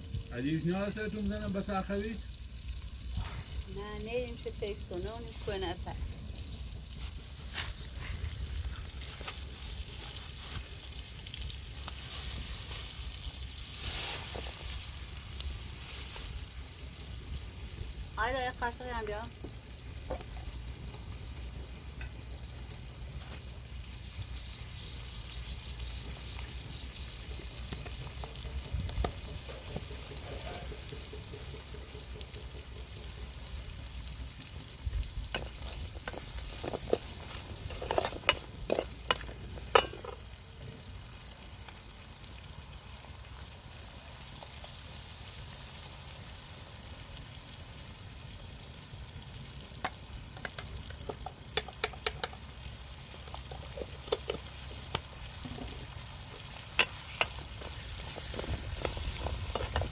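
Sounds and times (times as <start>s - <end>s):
food sizzling in a pan: 0.0s - 59.9s
spoon clicking against pan: 50.4s - 52.4s.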